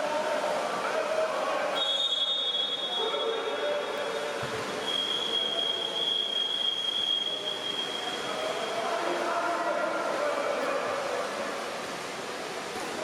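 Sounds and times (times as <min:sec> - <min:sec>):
echoing pool hall noise: 0:00.0 - 0:13.0
referee's whistle blast: 0:01.8 - 0:08.7.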